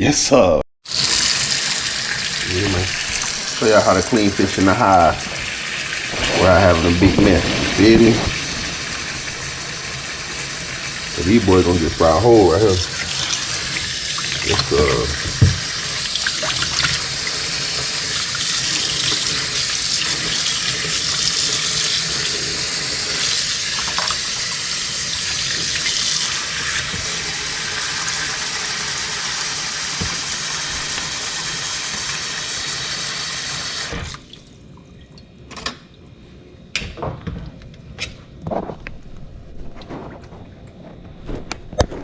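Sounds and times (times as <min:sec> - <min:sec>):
tap water running into sink: 0:00.9 - 0:34.4.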